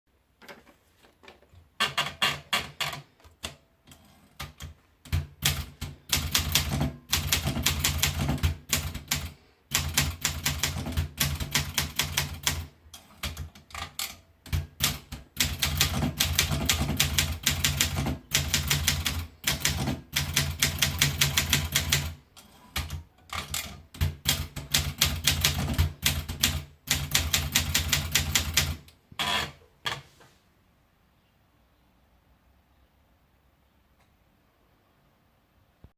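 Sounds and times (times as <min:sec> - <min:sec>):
typewriter keystrokes: 0:01.8 - 0:28.9.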